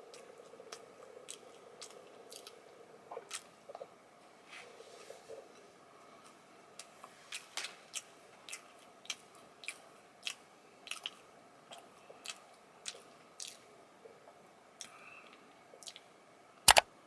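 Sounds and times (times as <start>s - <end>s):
person chewing snack cake: 0.0s - 4.0s, 4.6s - 16.8s
mouth clicks: 16.7s - 16.9s.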